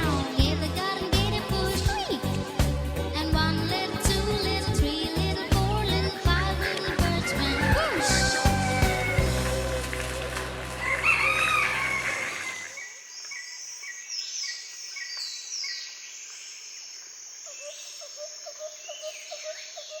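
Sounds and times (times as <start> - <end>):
background music: 0.0 - 12.8
rising-and-falling call: 7.2 - 12.8
small birds chirping: 12.3 - 20.0.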